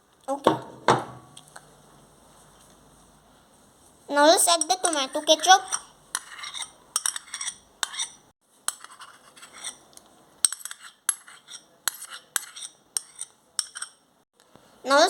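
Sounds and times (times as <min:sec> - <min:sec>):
metal spoon clinking on a bowl: 0:04.6 - 0:09.8, 0:10.4 - 0:14.0.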